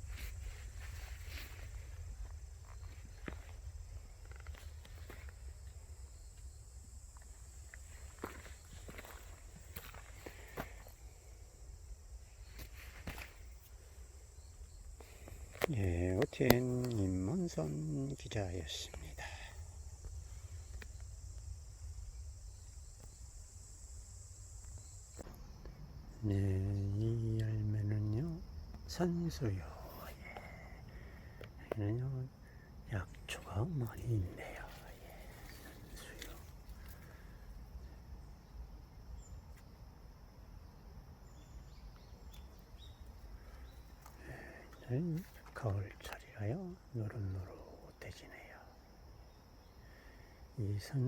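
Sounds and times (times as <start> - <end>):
steady low rumble: 0.0 - 12.6, 13.3 - 38.3
crickets chirring: 0.0 - 51.0.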